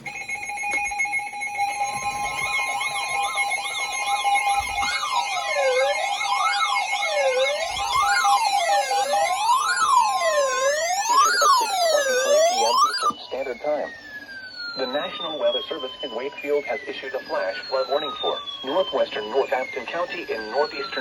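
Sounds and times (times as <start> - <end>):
electronic alert tones: 0.0 - 13.7
synthesized siren wailing: 0.0 - 21.0.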